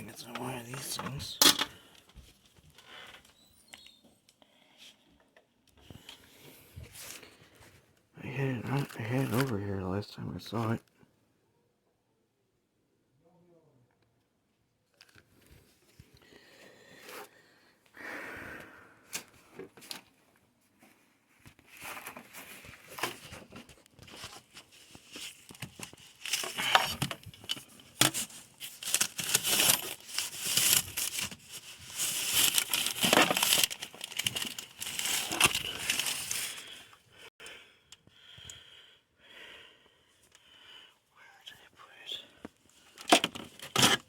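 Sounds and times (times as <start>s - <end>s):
plastic bags crinkling: 21.8s - 36.8s.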